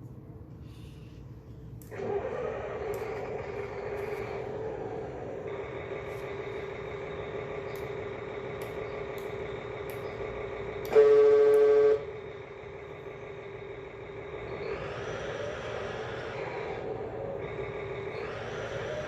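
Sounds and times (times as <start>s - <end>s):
toy truck engine drone: 1.8s - 19.0s
horn blast: 10.8s - 12.1s.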